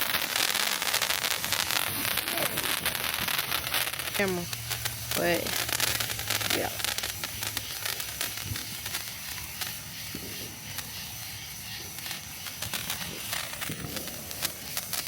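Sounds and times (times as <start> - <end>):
sparkler crackling and fizzing: 0.0 - 15.0.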